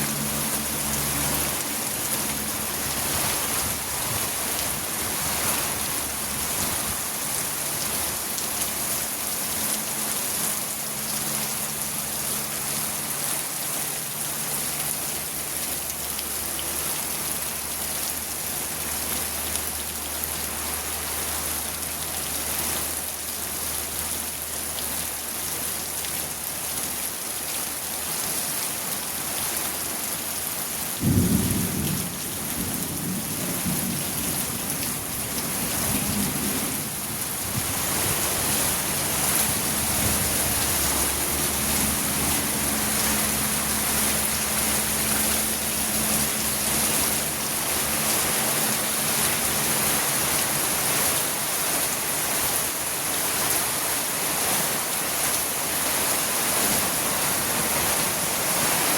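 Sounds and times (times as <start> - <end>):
rain falling: 0.0 - 58.9
thunder rumbling: 31.0 - 45.4.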